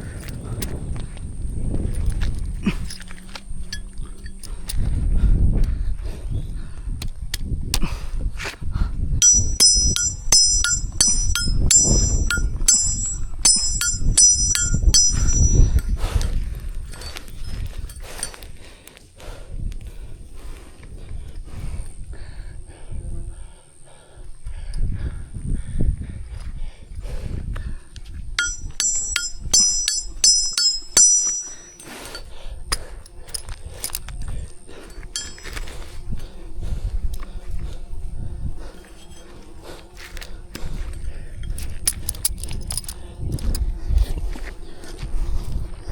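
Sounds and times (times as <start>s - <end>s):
hammer striking metal nail: 9.2s - 16.0s, 28.4s - 31.9s, 35.2s - 35.6s.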